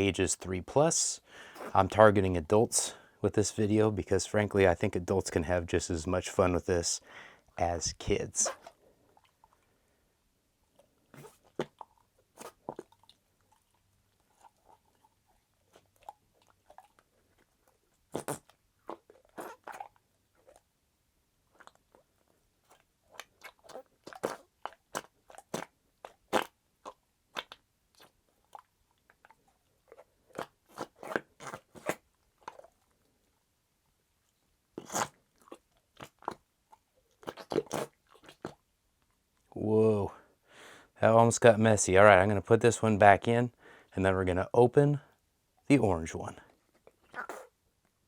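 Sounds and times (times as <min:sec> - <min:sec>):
noise putty squelching: 0:10.7 - 0:20.8, 0:34.7 - 0:39.4.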